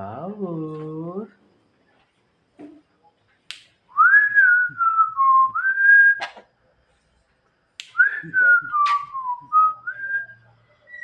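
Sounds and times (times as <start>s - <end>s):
person whistling: 4.0s - 6.2s, 7.9s - 11.0s.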